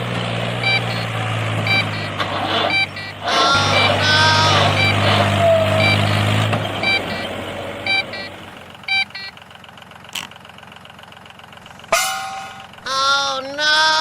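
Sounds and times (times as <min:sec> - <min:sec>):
vehicle engine running: 0:00.0 - 0:14.0
reversing alarm beeps: 0:00.6 - 0:09.4.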